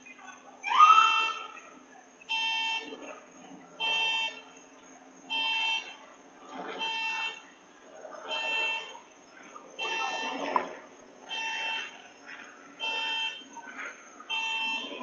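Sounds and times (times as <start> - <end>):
electronic alarm beeping: 2.2 - 3.2, 3.8 - 4.6, 5.3 - 6.0, 6.7 - 7.6, 8.2 - 9.1, 9.8 - 13.6, 14.2 - 15.0.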